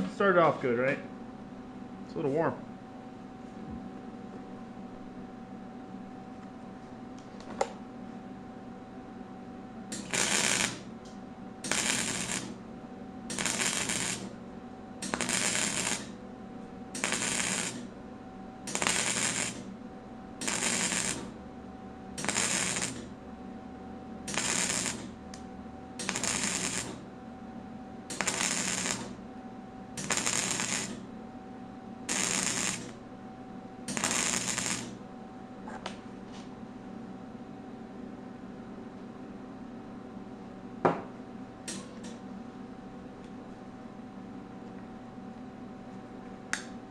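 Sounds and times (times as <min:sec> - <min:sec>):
welder crackling bursts: 0:09.9 - 0:10.9, 0:11.6 - 0:12.6, 0:13.3 - 0:14.4, 0:15.0 - 0:16.2, 0:16.9 - 0:17.9, 0:18.7 - 0:19.7, 0:20.4 - 0:21.3, 0:22.2 - 0:23.1, 0:24.3 - 0:25.1, 0:26.0 - 0:27.0, 0:28.1 - 0:29.2, 0:30.0 - 0:31.0, 0:32.1 - 0:33.0, 0:33.9 - 0:35.0
welder hum: 0:09.9 - 0:23.2, 0:24.2 - 0:27.1, 0:28.1 - 0:29.3, 0:29.9 - 0:31.1, 0:32.0 - 0:33.0, 0:33.8 - 0:35.0.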